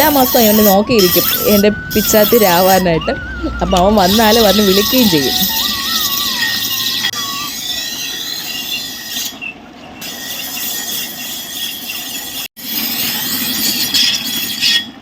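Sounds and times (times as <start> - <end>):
knife grinding on stone: 10.0 - 14.9.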